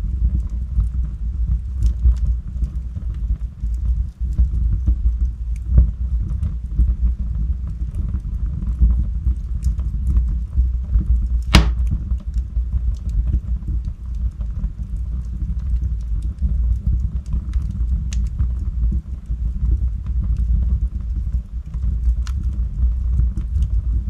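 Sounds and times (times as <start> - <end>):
fire crackling: 0.0 - 24.0
fire rumbling: 0.0 - 24.0
sharp pops of burning wood: 11.2 - 12.5.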